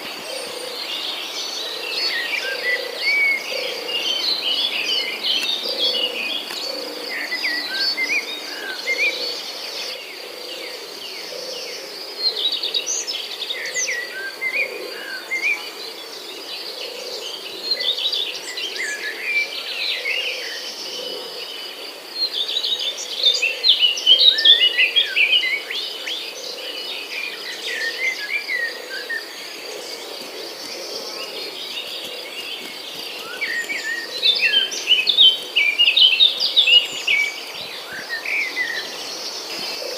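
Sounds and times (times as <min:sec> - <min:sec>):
birds chirping: 0:00.0 - 0:11.5, 0:22.3 - 0:39.9
insects trilling: 0:00.0 - 0:39.9.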